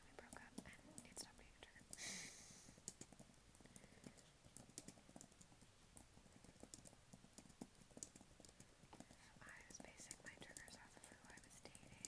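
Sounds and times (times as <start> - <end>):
computer keyboard typing: 2.8 - 12.0.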